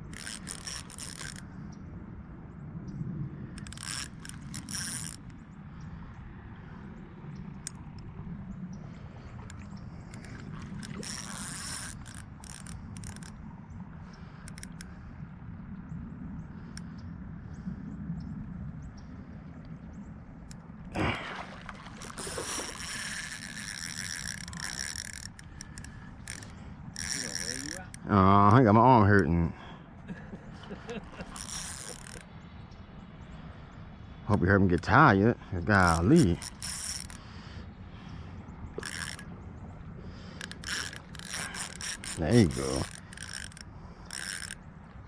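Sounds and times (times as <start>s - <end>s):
fishing reel gears clicking: 0.0s - 1.4s, 3.6s - 5.3s, 10.1s - 13.4s, 22.0s - 28.0s, 31.3s - 32.2s, 35.8s - 37.2s, 38.8s - 39.3s, 40.3s - 44.6s.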